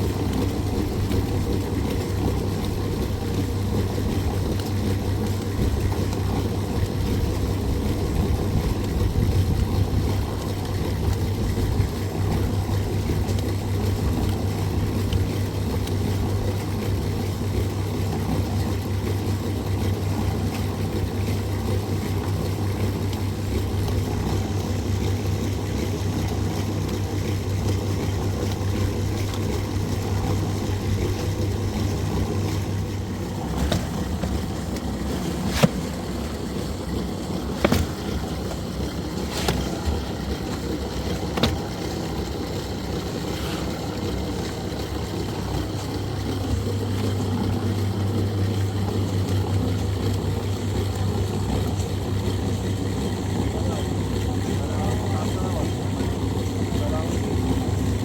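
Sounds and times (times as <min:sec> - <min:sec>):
motor humming: 0:00.0 - 0:58.0
sharp knocks: 0:37.5 - 0:38.4.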